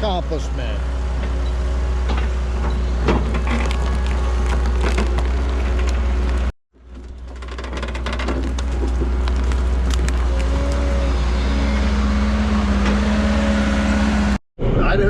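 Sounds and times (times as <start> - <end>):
diesel engine droning: 0.0 - 14.4.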